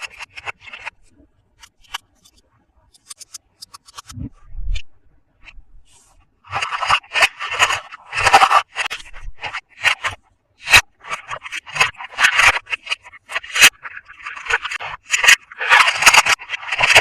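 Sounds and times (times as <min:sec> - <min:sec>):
packaging scraping and rubbing: 0:00.0 - 0:02.4, 0:05.9 - 0:17.0.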